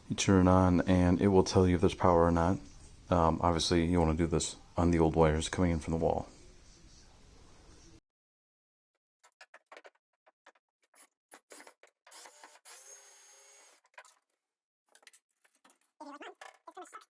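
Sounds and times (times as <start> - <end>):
faint clicks and scraping: 13.8 - 17.0.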